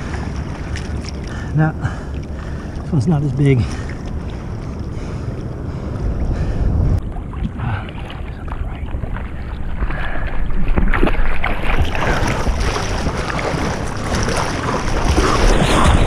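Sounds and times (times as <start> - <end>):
wind buffeting microphone: 0.0 - 16.0
ocean surf rushing and splashing: 11.3 - 16.0.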